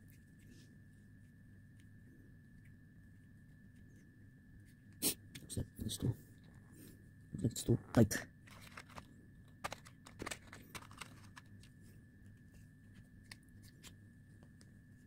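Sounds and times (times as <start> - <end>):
small parts clicking: 8.5 - 11.7.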